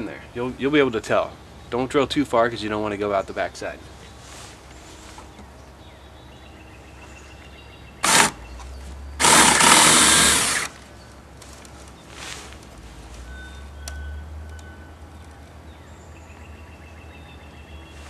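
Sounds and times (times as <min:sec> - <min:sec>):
power drill boring into wood: 0:08.0 - 0:08.4, 0:09.2 - 0:10.7.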